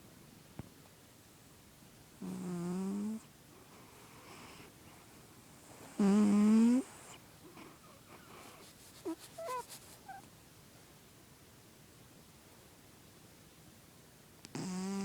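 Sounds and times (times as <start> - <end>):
cat snoring: 2.2 - 3.3, 5.7 - 7.2, 14.5 - 15.0.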